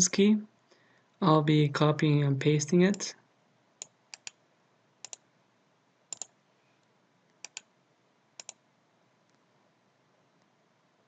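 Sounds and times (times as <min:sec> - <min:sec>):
mouse clicks: 0:03.8 - 0:04.4, 0:05.0 - 0:05.2, 0:06.1 - 0:06.4, 0:07.3 - 0:07.7, 0:08.4 - 0:08.6.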